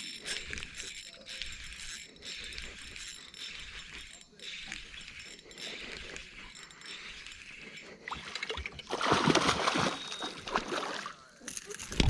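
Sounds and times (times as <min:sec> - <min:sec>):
fish splashing at water surface: 0:08.9 - 0:11.2.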